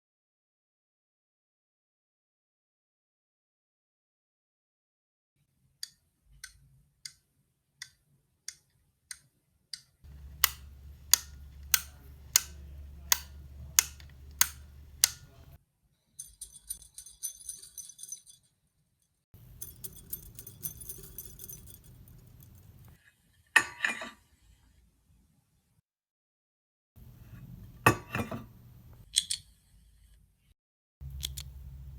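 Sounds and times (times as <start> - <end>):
metallic jingling: 16.2 - 18.5, 19.4 - 23.0.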